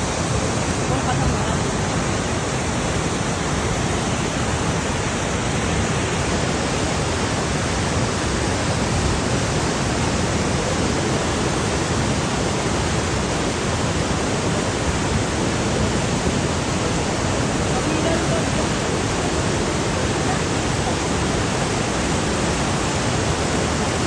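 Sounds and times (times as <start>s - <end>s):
river rushing: 0.0s - 24.0s.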